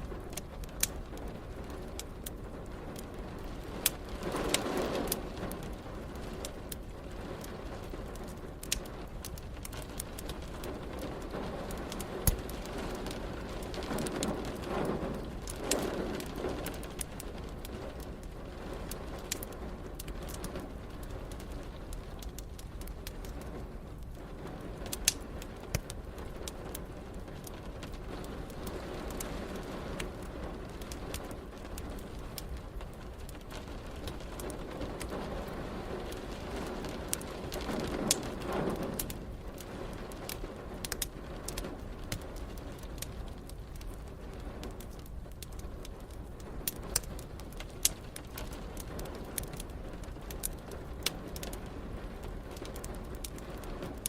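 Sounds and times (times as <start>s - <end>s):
rain hiss: 0.0s - 54.0s
wood fire crackling and popping: 0.0s - 54.0s.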